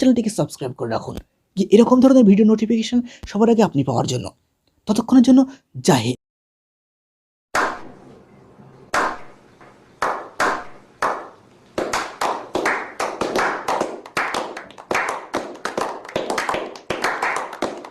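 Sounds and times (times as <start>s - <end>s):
sharp percussive hits: 7.6s - 8.0s, 8.9s - 9.4s, 10.0s - 14.1s.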